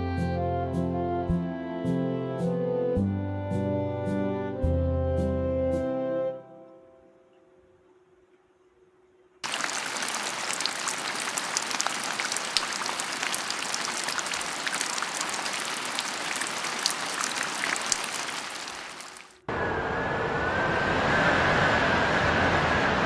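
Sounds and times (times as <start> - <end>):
rain drop ticks: 9.4 - 19.3
rainfall hiss: 9.4 - 19.5.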